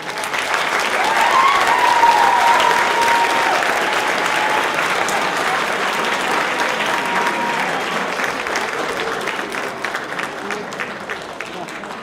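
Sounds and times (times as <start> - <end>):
audience applauding loudly: 0.0 - 12.0.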